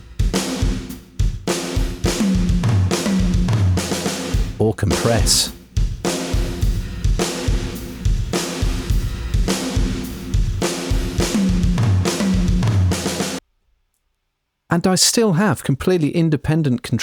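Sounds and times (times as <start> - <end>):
drum kit playing a steady beat: 0.0 - 13.4.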